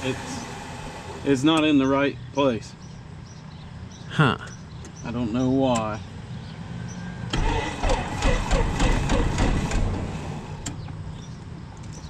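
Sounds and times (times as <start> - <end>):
aircraft piston engine turning over: 7.3 - 10.8.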